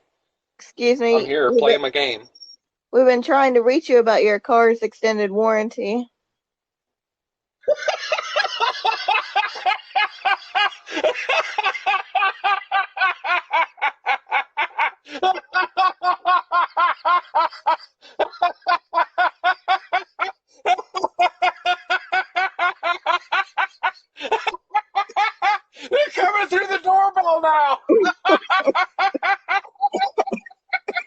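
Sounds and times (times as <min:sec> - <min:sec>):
person laughing hard: 0:07.7 - 0:31.0.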